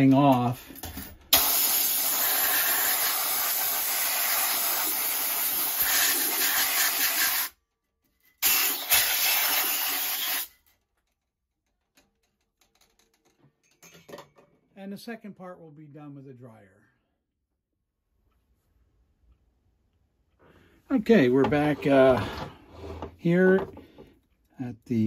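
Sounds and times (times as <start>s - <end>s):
compressed air hissing from blow gun: 1.3s - 7.6s, 8.4s - 10.5s.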